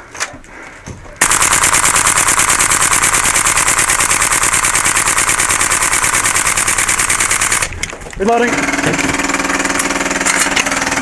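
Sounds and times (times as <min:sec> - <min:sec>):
airsoft gun full-auto burst: 0:01.2 - 0:07.9.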